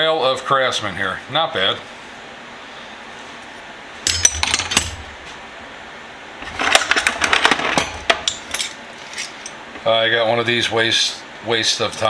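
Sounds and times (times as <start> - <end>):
metal hand tools clinking: 6.6 - 9.6.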